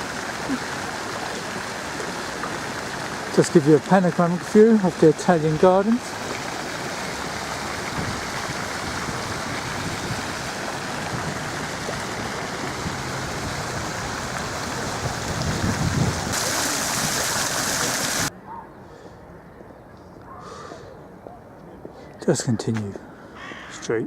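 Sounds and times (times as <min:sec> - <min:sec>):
fountain water splashing into pool: 0:00.0 - 0:18.3.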